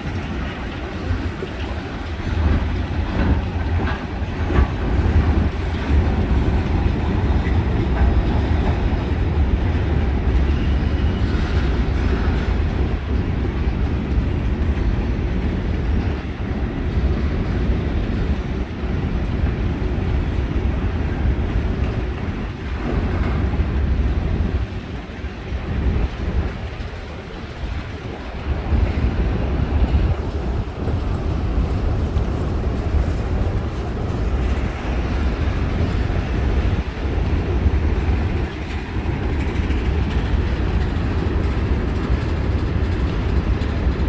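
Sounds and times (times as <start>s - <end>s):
freight train wheels clattering on rails: 0.0s - 44.0s.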